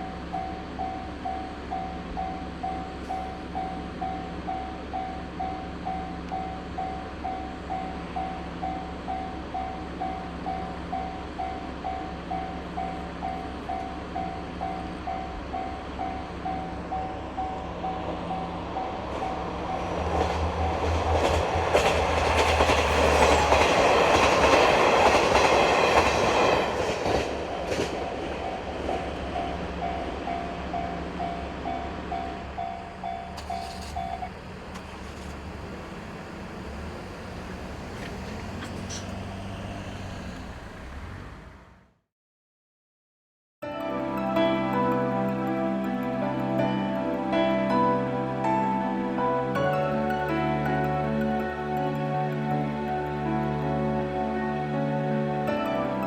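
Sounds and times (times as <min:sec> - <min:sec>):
level crossing warning bell: 0:00.0 - 0:37.4, 0:49.4 - 0:56.0
train passing: 0:00.0 - 0:41.8, 0:43.8 - 0:56.0
train wheels clacking: 0:20.0 - 0:39.2.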